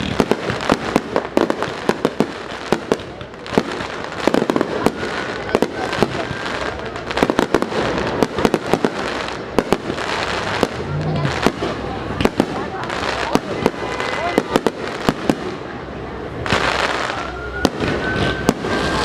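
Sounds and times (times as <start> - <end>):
fireworks bangs and cracks: 0.0 - 19.0
faint firework whistle: 4.4 - 6.5, 8.5 - 9.2, 16.5 - 19.0.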